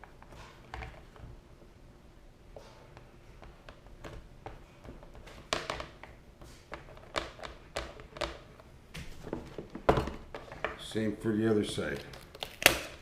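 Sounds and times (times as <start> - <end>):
hands tapping plastic plate: 3.0 - 8.6.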